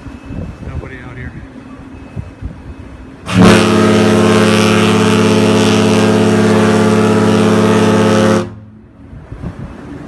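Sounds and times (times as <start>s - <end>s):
ship horn low blast: 3.2s - 8.9s.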